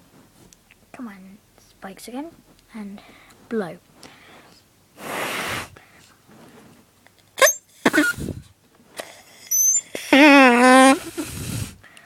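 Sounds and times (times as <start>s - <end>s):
breathy puff: 4.0s - 6.6s
straw horn squeaks: 7.4s - 8.2s, 9.5s - 10.9s.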